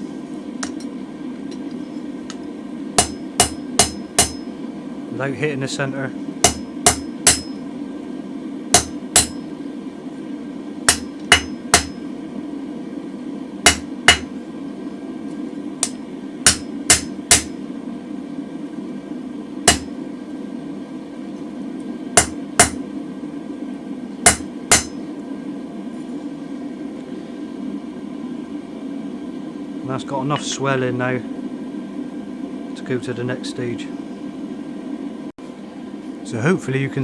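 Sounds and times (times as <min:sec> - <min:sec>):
hammer striking metal on anvil: 0:03.0 - 0:04.5, 0:06.4 - 0:07.6, 0:08.7 - 0:09.5, 0:10.9 - 0:12.0, 0:13.7 - 0:14.3, 0:15.8 - 0:17.5, 0:19.6 - 0:19.9, 0:22.2 - 0:22.8, 0:24.2 - 0:25.0.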